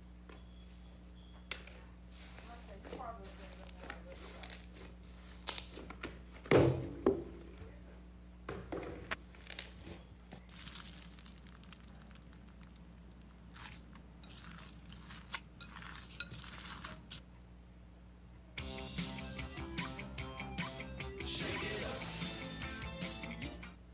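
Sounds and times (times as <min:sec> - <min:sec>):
slime crackling and crunching: 0:10.4 - 0:17.2.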